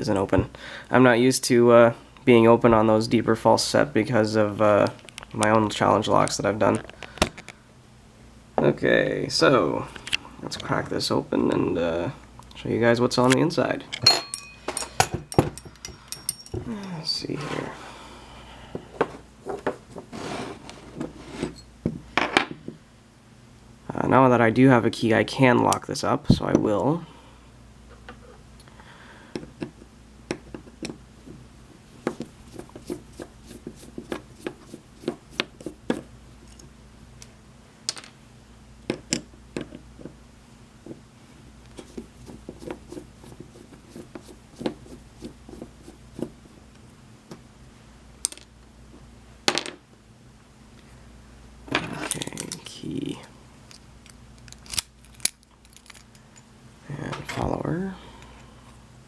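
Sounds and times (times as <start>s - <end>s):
metallic rattle: 14.0s - 16.7s.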